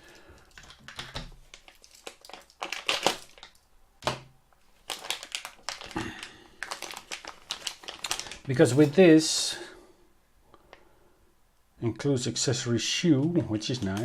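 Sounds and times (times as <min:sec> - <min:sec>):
packaging crinkling and rustling: 0:00.0 - 0:09.4, 0:13.2 - 0:14.0
plastic parts clicking and knocking: 0:00.4 - 0:04.3.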